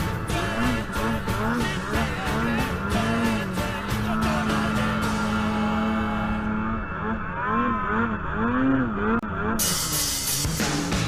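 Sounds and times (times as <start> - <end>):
song with singing and drum beat: 0.0 - 5.9.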